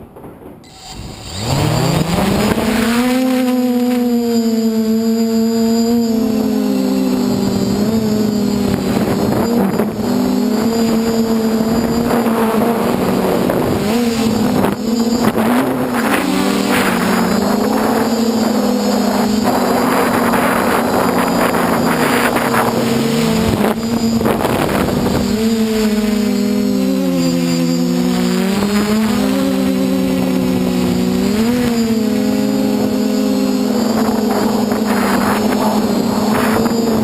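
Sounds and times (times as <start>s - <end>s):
wind noise: 0.0s - 37.0s
drone motors whining: 0.6s - 37.0s.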